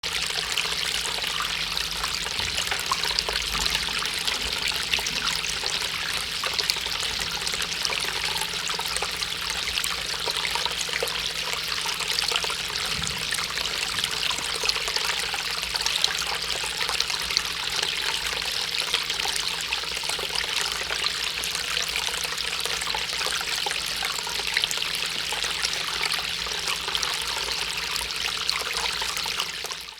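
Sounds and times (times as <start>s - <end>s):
fountain water trickling: 0.0s - 29.9s.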